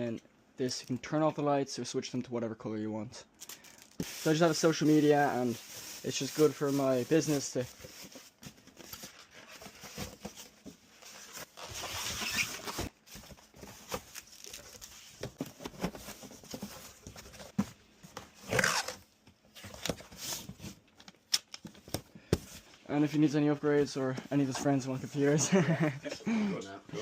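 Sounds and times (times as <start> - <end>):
packaging rustling: 3.4 - 17.6.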